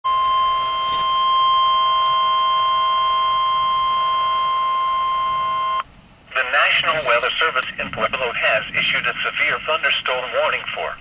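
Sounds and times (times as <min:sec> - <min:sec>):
steady electronic tone: 0:00.1 - 0:05.9.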